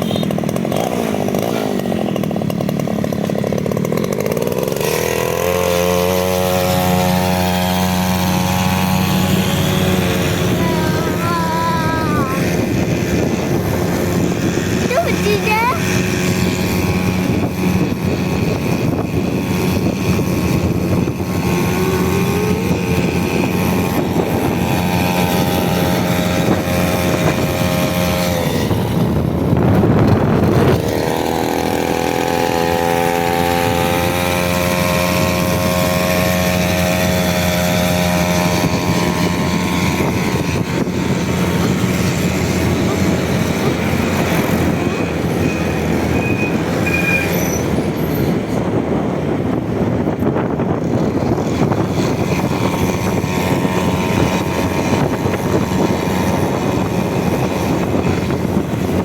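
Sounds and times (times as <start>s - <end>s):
loud rough noise: 0.0s - 59.0s
small engine running: 0.0s - 59.0s.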